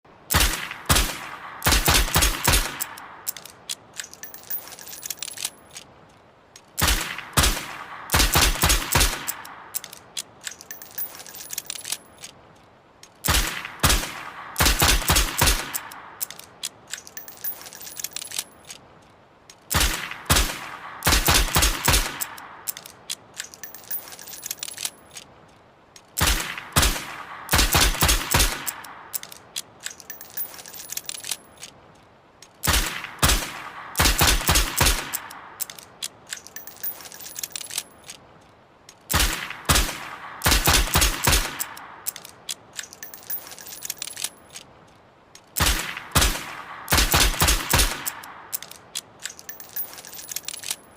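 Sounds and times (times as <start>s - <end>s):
light metallic clicks: 0.3s - 50.9s
faint ringing tinkle: 4.1s - 5.8s, 10.6s - 12.2s, 17.1s - 18.7s, 23.5s - 25.1s, 30.0s - 31.6s, 36.5s - 38.1s, 42.9s - 44.6s, 49.4s - 50.9s.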